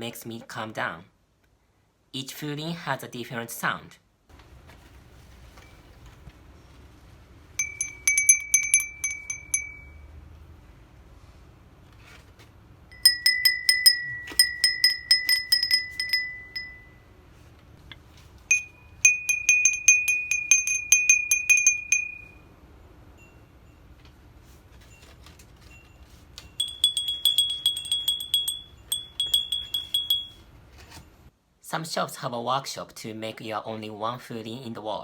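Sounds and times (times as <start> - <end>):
glass wind bells clinking: 7.6 - 10.2, 12.9 - 17.1, 18.5 - 24.0, 25.7 - 30.5.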